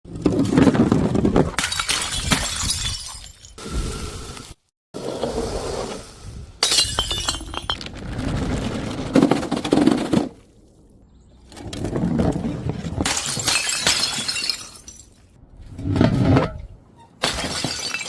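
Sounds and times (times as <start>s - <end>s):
glass bottles smashing: 1.6s - 3.6s, 6.6s - 7.9s, 13.0s - 15.3s, 17.2s - 18.0s
glass shards clattering: 6.6s - 7.8s.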